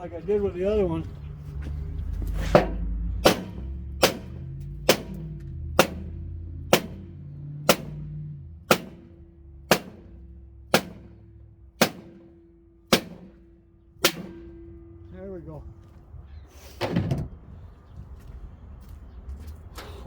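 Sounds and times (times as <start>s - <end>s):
hammer striking metal shaft: 2.4s - 15.0s.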